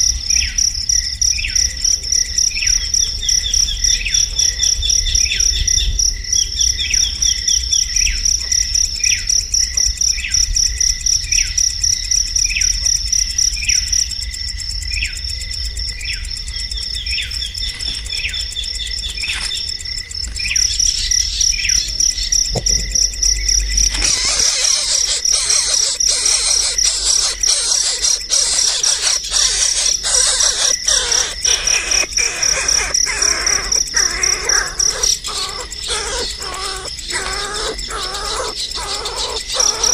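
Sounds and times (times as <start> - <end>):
pulsing high insect trill: 0.0 - 39.9
scratchy chatter with clicks: 22.6 - 39.9
short falling bird calls: 23.9 - 39.9.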